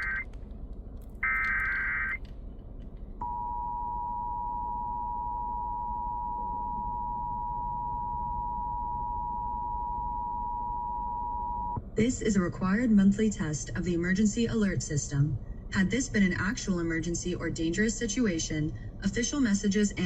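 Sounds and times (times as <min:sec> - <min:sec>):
two-tone alert signal: 0:00.0 - 0:00.2, 0:01.2 - 0:02.2.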